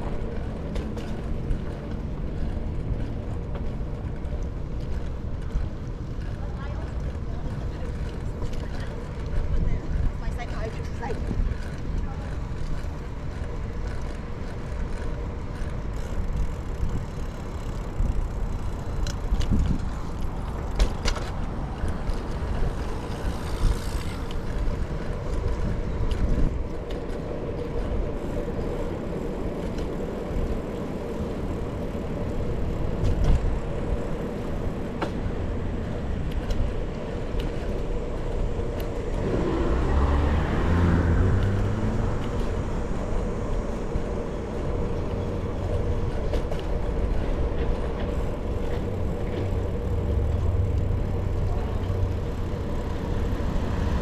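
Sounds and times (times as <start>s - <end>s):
road traffic rumble: 0.0s - 54.0s
vehicle passing: 37.5s - 54.0s.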